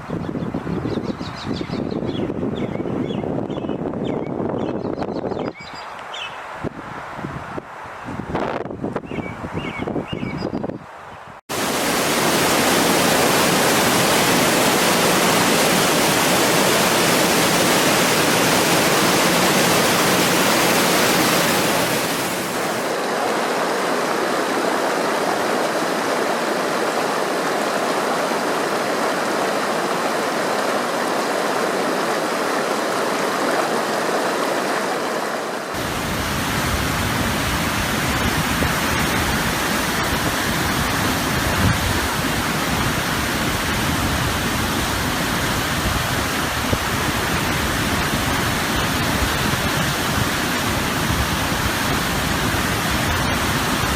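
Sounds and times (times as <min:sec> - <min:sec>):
river water rushing: 0:11.5 - 0:53.9.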